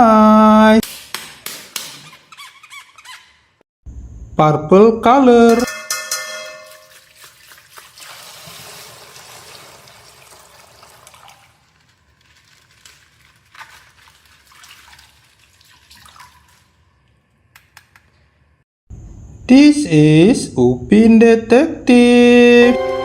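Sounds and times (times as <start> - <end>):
plastic packaging rustling: 11.2 - 14.5.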